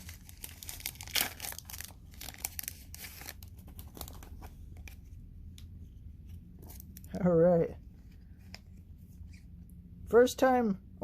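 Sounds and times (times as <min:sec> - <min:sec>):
plastic wrapper crinkling and tearing: 0:00.0 - 0:05.0
cards rustling: 0:00.0 - 0:07.3.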